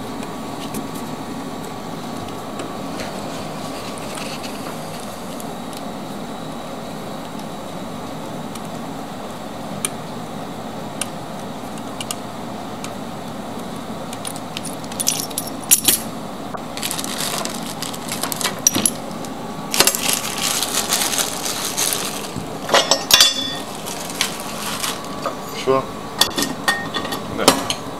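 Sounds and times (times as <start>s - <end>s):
metal parts and tools clinking: 14.3s - 16.1s, 19.8s - 25.1s.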